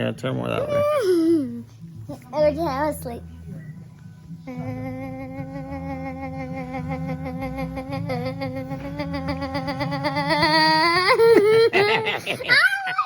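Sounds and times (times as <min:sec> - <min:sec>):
child humming: 0:04.4 - 0:12.1.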